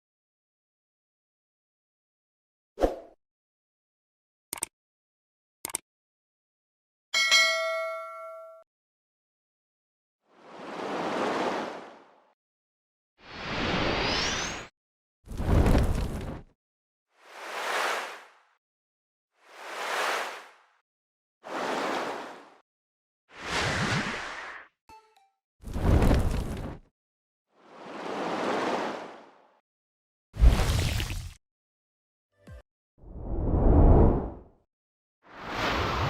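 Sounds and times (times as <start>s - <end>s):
bright bell-like ding: 7.2s - 8.6s.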